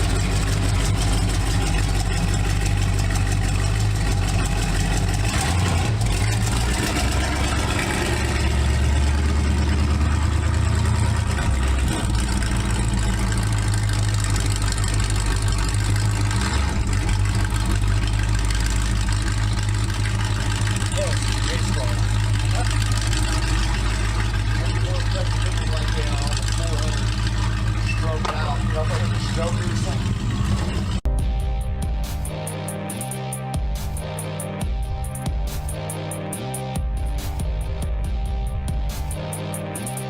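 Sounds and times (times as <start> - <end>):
race car engine idling: 0.0 - 31.1.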